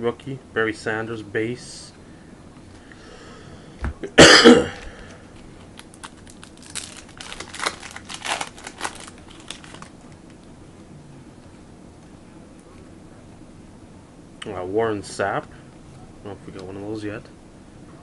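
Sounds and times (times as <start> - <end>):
man coughing: 4.0 - 5.0
foil wrapper crinkling and tearing: 5.6 - 10.4.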